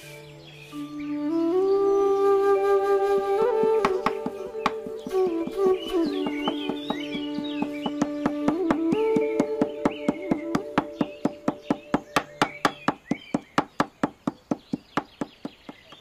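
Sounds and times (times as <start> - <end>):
background music: 0.0 - 13.0
knife chopping on a board: 6.2 - 16.0.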